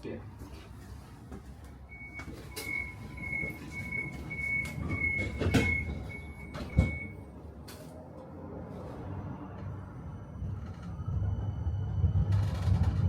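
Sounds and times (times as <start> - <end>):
door warning beeps: 1.9 - 7.3
doors sliding with clicks: 2.0 - 7.8
doors closing thump: 2.1 - 7.2.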